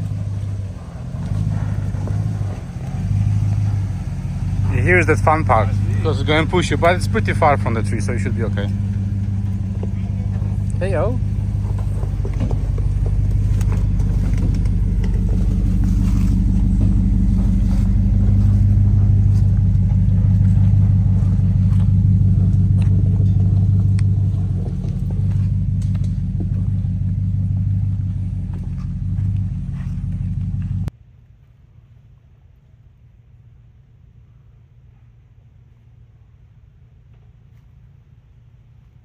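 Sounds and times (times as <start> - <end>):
off-road vehicle engine running: 0.0 - 30.9.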